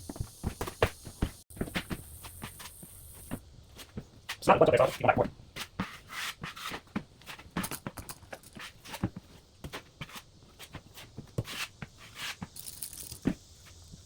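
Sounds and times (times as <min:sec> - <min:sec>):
drywall knife scraping: 0:04.4 - 0:07.5.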